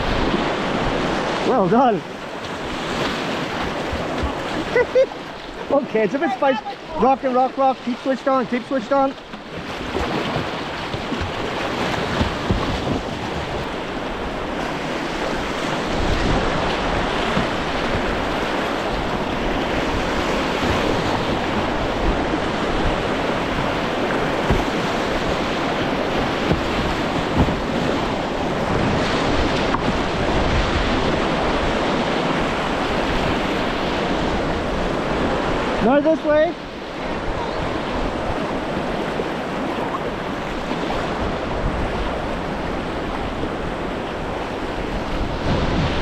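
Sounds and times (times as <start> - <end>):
whitewater rapids rushing: 0.0 - 46.0
wind buffeting microphone: 9.3 - 35.8, 36.7 - 46.0.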